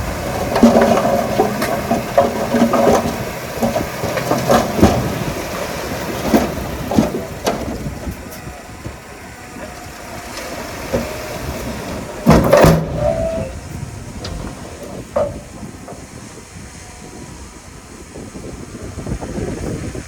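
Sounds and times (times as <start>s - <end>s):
metallic clanks: 0.0s - 8.5s, 9.6s - 16.3s
diesel engine running: 0.0s - 20.0s.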